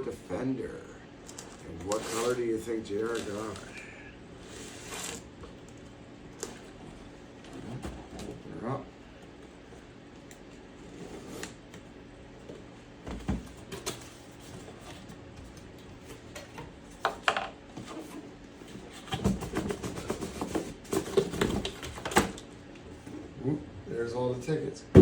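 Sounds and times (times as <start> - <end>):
crinkly rustling: 1.2 - 3.8.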